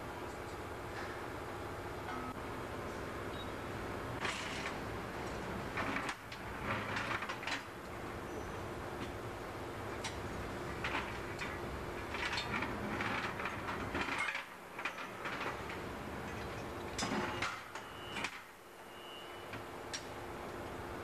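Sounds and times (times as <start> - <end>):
machinery hum: 0.0 - 7.1.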